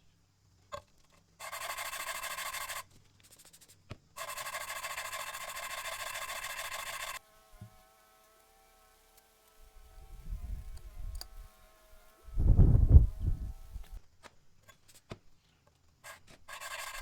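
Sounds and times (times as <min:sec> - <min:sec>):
chisel grinding on abrasive wheel: 0:01.4 - 0:02.8, 0:04.2 - 0:12.6, 0:16.0 - 0:17.0
grinder whining: 0:04.2 - 0:14.0.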